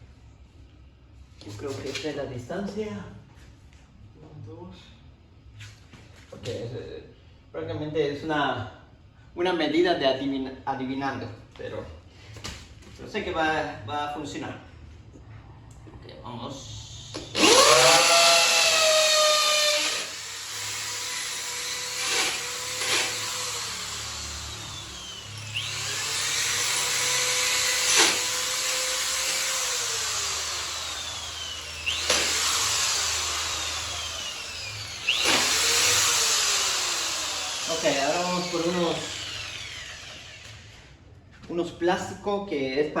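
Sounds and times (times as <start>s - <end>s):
electric drill whining: 17.1s - 41.0s.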